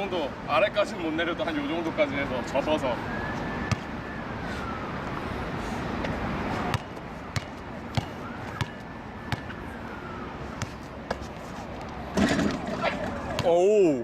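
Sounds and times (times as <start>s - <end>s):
outdoor background noise: 0.0s - 14.0s
distant siren wailing: 1.8s - 11.1s, 11.8s - 14.0s
basketball bouncing on court: 6.7s - 9.5s.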